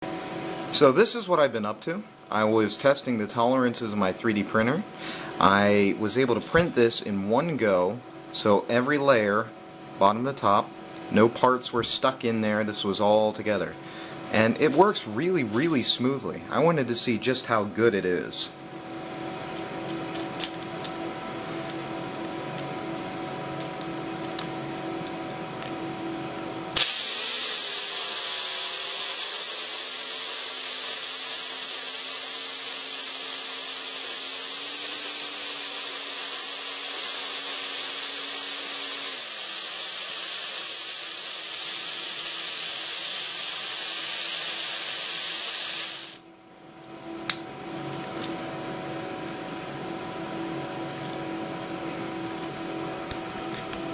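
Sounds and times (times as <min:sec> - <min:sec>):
rotary tool high whine: 0:26.7 - 0:46.2.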